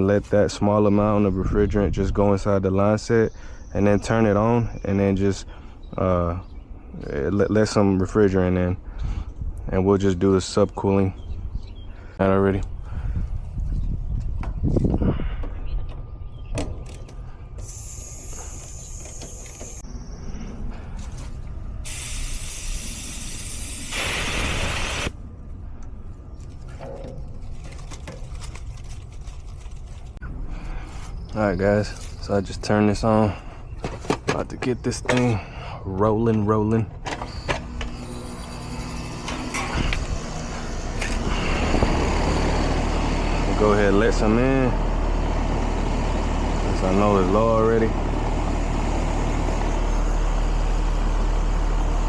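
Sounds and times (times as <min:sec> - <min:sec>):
refrigerant hissing: 0:17.6 - 0:19.8, 0:21.9 - 0:25.1.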